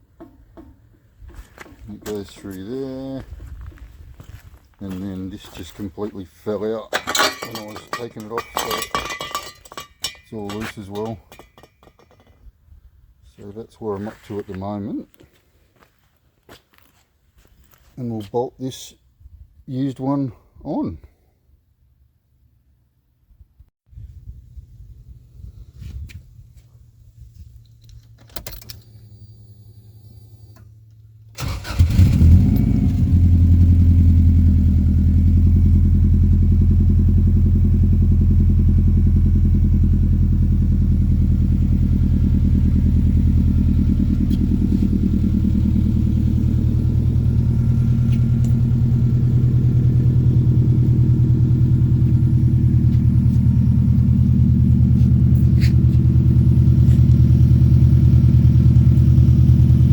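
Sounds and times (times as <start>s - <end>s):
car engine starting and idling: 28.0s - 59.9s.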